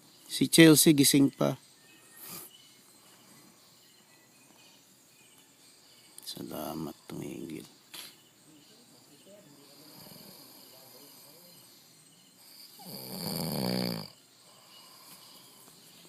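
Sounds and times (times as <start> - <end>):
person snoring: 9.7 - 11.4, 12.6 - 15.2
person breathing softly: 14.4 - 16.0.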